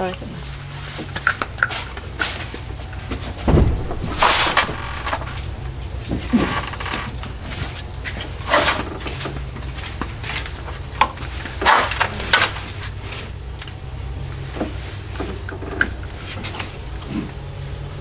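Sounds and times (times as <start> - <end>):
steady low hum: 2.2 - 8.4
tools knocking on car parts: 3.4 - 6.8.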